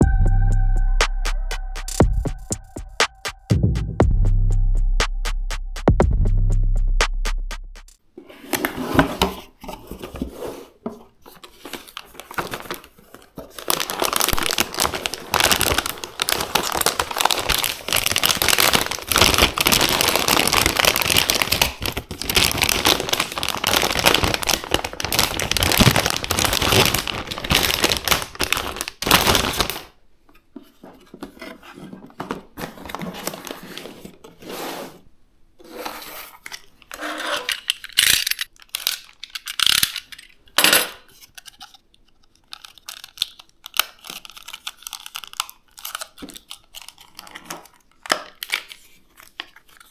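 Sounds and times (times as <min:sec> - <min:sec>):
packaging crinkling and tearing: 0:11.2 - 0:30.0, 0:36.5 - 0:49.9
packaging clicks: 0:11.4 - 0:29.9, 0:37.4 - 0:49.9.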